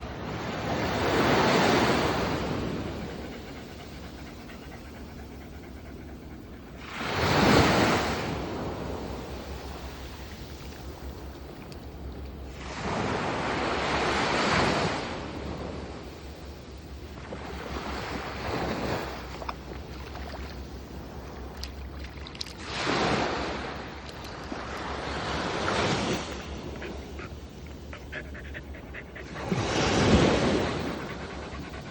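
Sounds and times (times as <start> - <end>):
sea waves washing onto shore: 0.0 - 4.4, 6.8 - 16.4, 17.0 - 27.0, 29.2 - 31.9
wind rumble on microphone: 0.0 - 31.9.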